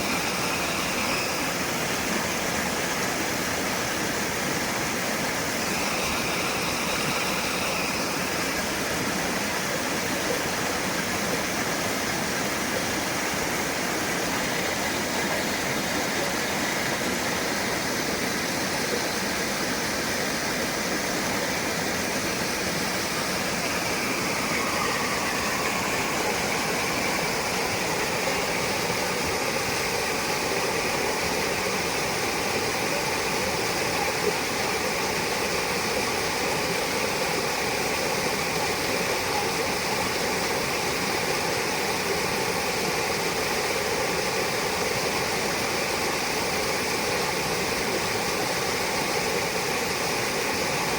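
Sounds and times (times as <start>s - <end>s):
faint steady tones: 0.0s - 3.1s, 4.8s - 17.2s, 21.2s - 36.0s
rushing water: 0.0s - 50.9s.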